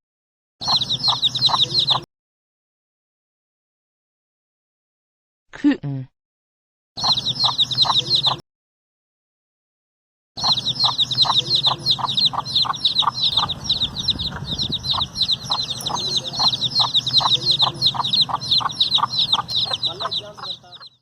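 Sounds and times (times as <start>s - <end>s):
chicks peeping: 0.6s - 2.1s, 7.0s - 8.4s, 10.4s - 21.0s.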